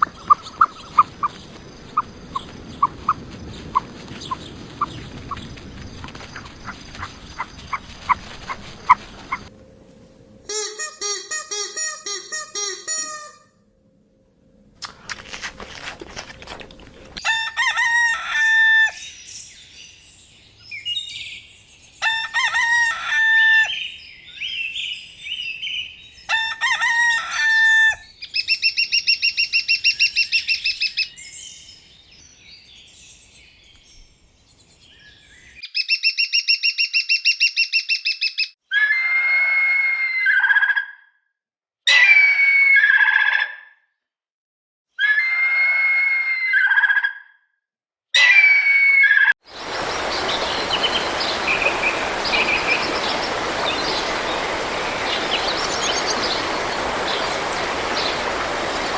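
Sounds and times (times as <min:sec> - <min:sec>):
rapid pulsing bird calls: 0:00.0 - 0:09.5, 0:28.0 - 0:33.4, 0:49.5 - 0:58.9
fowl cries: 0:17.2 - 0:19.1, 0:22.0 - 0:23.9, 0:26.3 - 0:30.3
rooster crowing: 0:17.2 - 0:19.1, 0:22.0 - 0:23.9, 0:26.3 - 0:28.1.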